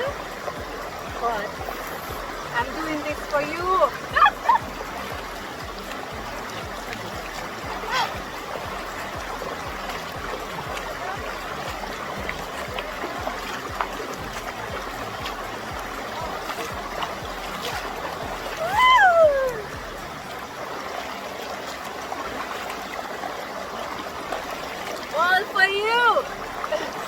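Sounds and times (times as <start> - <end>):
river water rushing from waterfall: 0.0 - 27.0
woman squealing: 4.1 - 4.6, 18.6 - 19.8.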